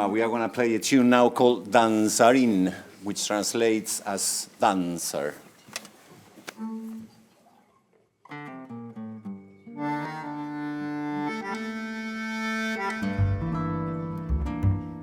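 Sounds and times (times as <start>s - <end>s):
held chord-like notes: 8.7s - 15.0s
rhythmic bass notes: 13.0s - 15.0s.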